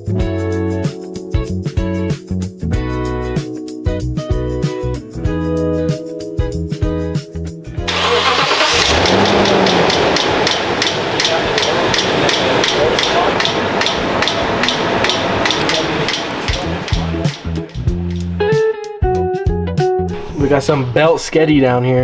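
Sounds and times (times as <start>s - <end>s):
engine starting and running: 7.9s - 18.0s, 20.2s - 21.4s
regular belt ticking: 7.9s - 18.1s.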